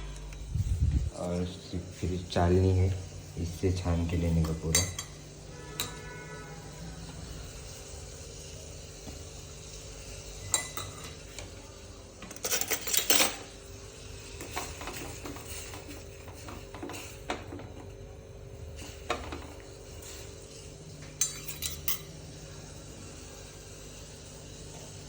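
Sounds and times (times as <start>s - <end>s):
low steady hum: 0.0s - 13.2s
metal utensils clinking: 4.3s - 6.0s, 10.4s - 11.5s, 12.2s - 13.6s, 14.3s - 17.8s, 21.2s - 22.2s.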